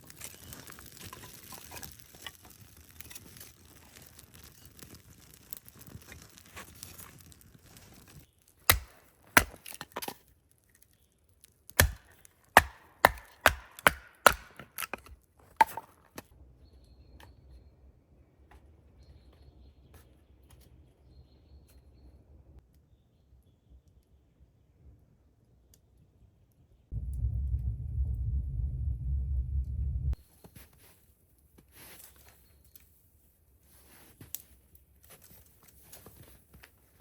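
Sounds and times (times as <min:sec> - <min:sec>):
axe chopping wood: 0:08.7 - 0:10.1, 0:11.8 - 0:15.9.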